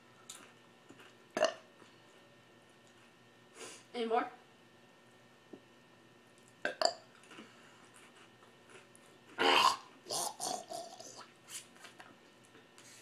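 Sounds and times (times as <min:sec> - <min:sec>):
person burping loudly: 0:09.4 - 0:11.2.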